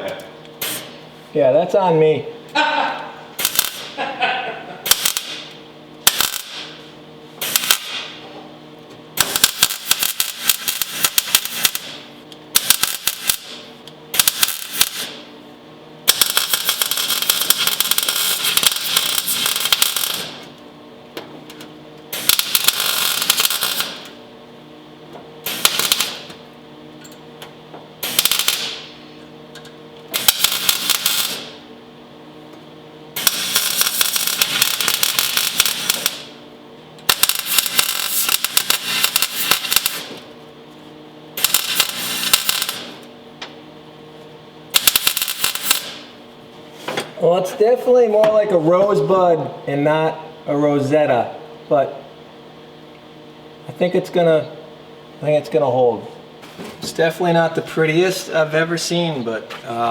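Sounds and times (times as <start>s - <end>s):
welding arc crackle: 0.6s - 1.0s, 1.7s - 8.3s, 9.1s - 20.6s, 21.5s - 24.3s, 25.4s - 26.6s, 28.0s - 31.7s, 33.1s - 36.4s, 37.0s - 43.2s, 44.7s - 46.2s.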